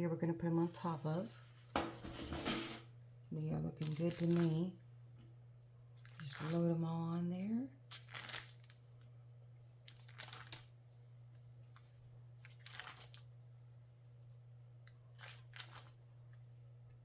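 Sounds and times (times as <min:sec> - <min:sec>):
low steady hum: 0:00.0 - 0:17.0
rustling and crinkling: 0:03.8 - 0:04.7, 0:06.0 - 0:06.7, 0:07.9 - 0:09.1, 0:09.8 - 0:13.3, 0:15.1 - 0:16.5.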